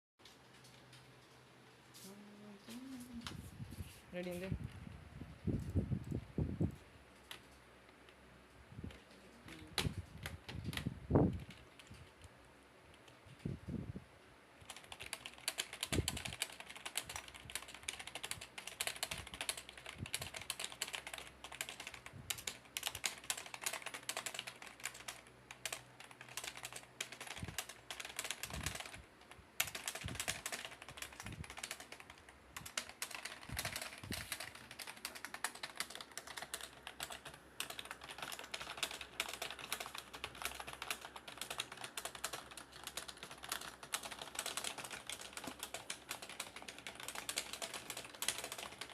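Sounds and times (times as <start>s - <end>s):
fast typing on keyboard: 9.8s - 12.2s, 14.6s - 48.9s.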